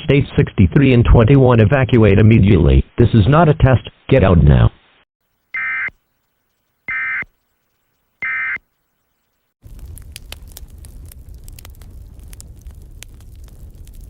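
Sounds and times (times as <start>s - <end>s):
steady crackling: 5.2s - 14.0s
buzzy digital data tone: 5.5s - 9.3s
low rumble: 9.6s - 14.0s.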